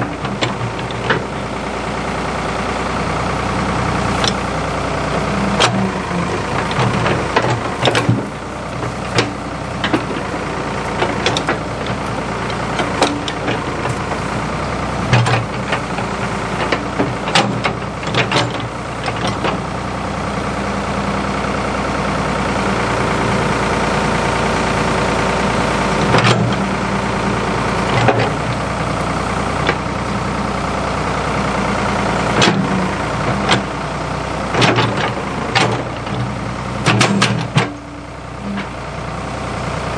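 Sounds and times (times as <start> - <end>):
backhoe engine running: 0.0 - 39.9
sharp knocks and clanks: 6.6 - 10.3, 16.6 - 19.6, 36.8 - 37.8.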